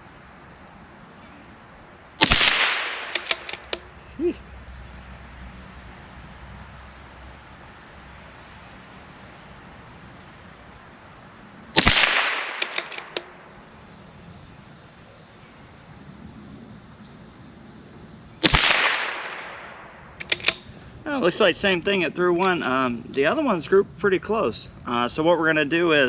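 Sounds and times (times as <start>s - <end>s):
rifle shot with echo: 2.2s - 3.9s, 11.8s - 13.5s, 18.4s - 20.7s
light clicks: 3.0s - 3.9s, 12.5s - 13.4s, 20.2s - 20.7s.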